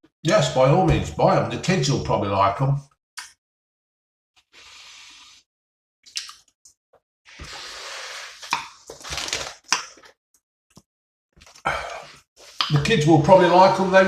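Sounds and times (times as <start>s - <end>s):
crisp packet crinkling: 8.9s - 10.1s.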